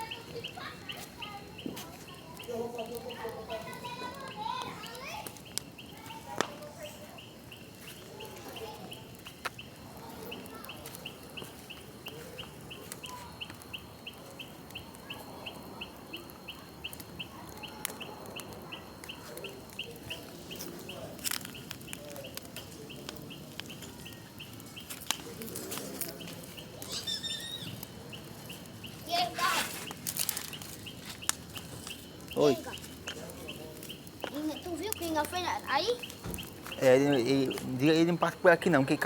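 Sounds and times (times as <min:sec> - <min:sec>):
bonfire crackling and popping: 0:00.0 - 0:39.0.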